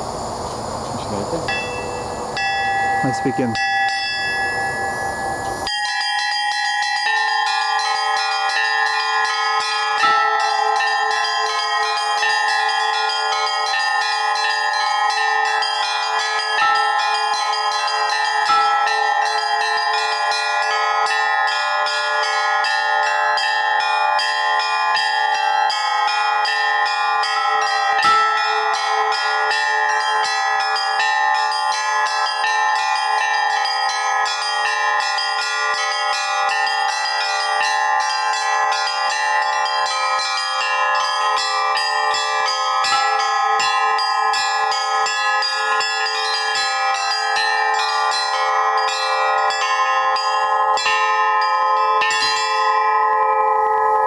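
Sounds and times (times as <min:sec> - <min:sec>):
small bells ringing rapidly: 0:00.0 - 0:54.0.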